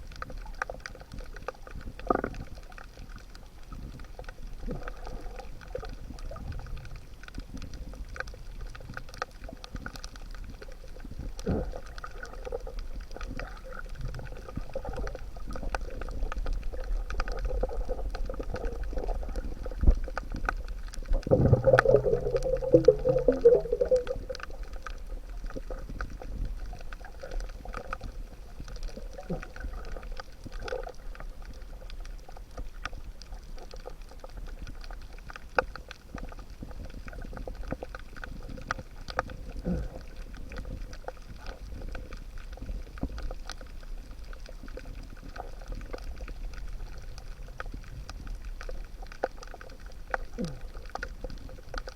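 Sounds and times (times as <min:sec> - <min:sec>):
faint clicks and crackles: 0:00.0 - 0:51.9
steady low underwater rumble: 0:00.0 - 0:51.9
gurgling burst of bubbles: 0:11.2 - 0:28.1, 0:50.3 - 0:51.0.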